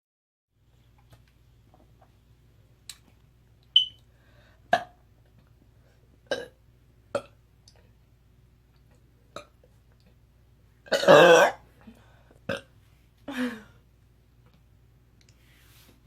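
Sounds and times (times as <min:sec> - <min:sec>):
woman burping: 0:10.9 - 0:11.6.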